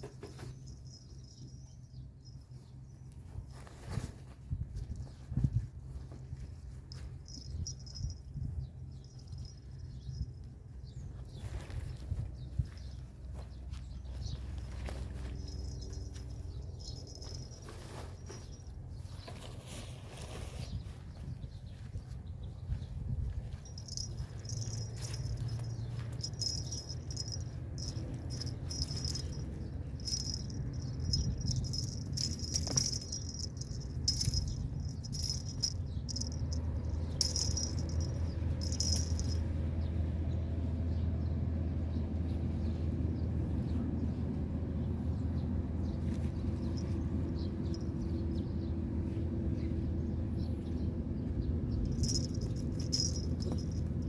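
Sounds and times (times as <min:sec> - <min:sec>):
low hum: 0:23.6 - 0:39.5.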